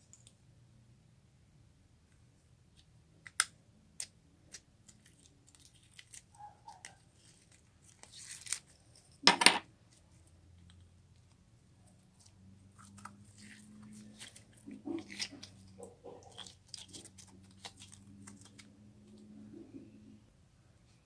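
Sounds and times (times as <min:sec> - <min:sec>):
sharp clicks and snaps: 0:02.8 - 0:06.2.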